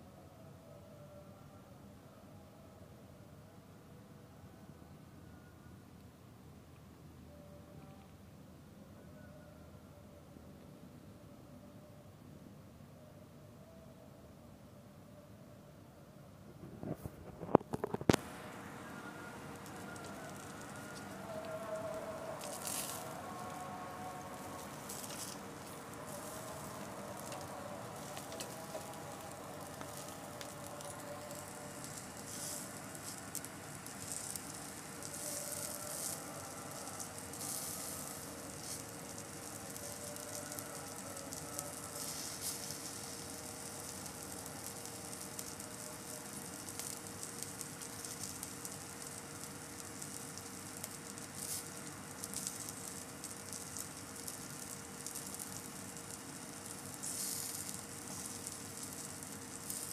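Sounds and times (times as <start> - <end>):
crackles and pops: 16.5 - 59.9
meat sizzling on a grill: 18.1 - 59.9.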